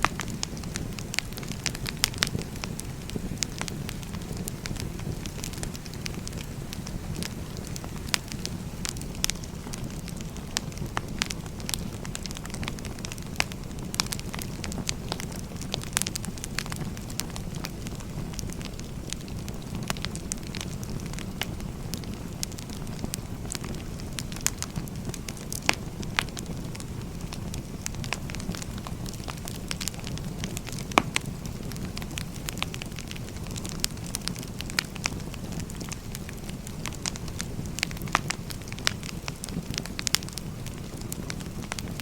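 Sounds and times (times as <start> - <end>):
firewood burning with crackles: 0.0 - 42.0.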